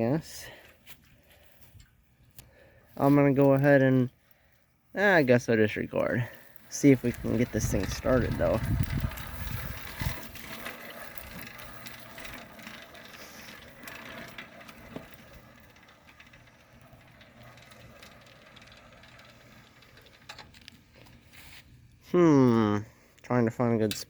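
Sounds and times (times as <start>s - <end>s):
faint mechanical clicks and rattles: 6.0s - 22.0s.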